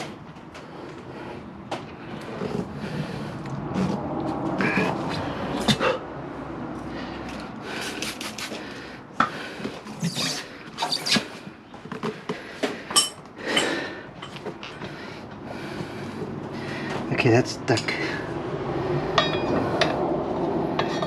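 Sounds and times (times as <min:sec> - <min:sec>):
tire levers scraping on rim: 0:09.8 - 0:12.1.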